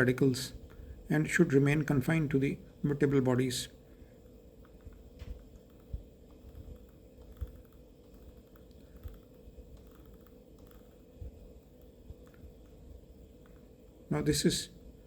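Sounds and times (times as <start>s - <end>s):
electrical hum: 0.0s - 15.0s
computer mouse clicks: 4.6s - 12.8s, 13.4s - 13.7s
soft low thumps: 11.2s - 13.0s.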